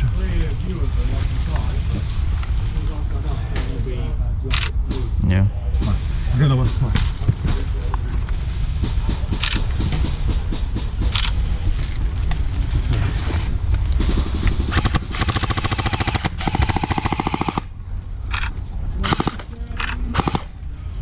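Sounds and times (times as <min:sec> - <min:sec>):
airsoft guns firing full auto: 0:14.1 - 0:17.7, 0:19.0 - 0:19.5, 0:20.1 - 0:20.6.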